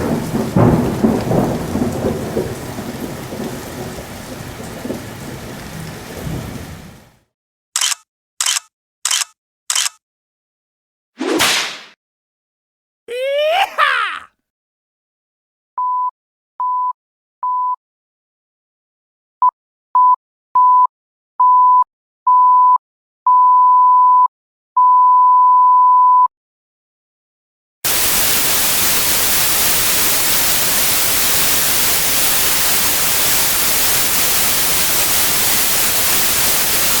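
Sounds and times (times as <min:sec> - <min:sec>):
white noise static hiss: 0:27.9 - 0:37.0.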